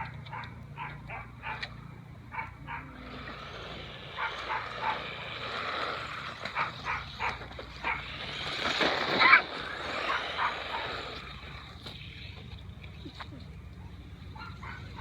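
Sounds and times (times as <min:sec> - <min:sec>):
dog yipping: 0:10.0 - 0:11.0, 0:14.4 - 0:15.0.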